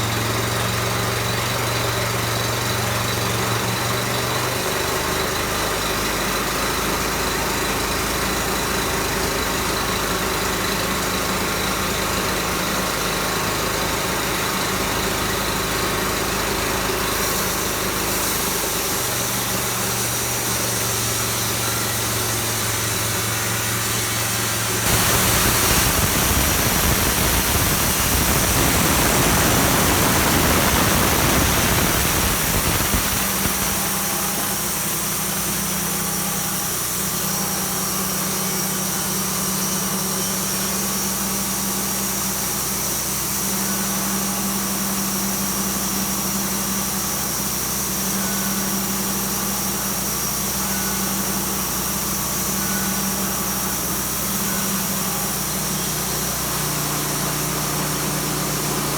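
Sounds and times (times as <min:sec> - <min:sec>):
petrol engine running: 0:00.0 - 0:37.0, 0:49.9 - 0:58.9.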